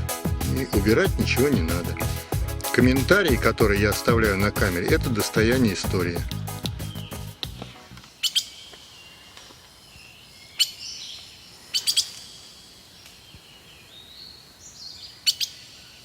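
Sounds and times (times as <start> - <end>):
birds chirping: 0.0 - 16.0
thin high whistled bird notes: 6.8 - 9.4.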